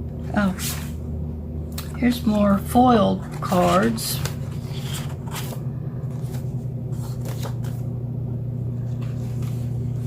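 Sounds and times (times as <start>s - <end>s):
steady low hum: 0.0s - 10.0s
cards being shuffled: 3.2s - 7.9s, 8.8s - 10.0s.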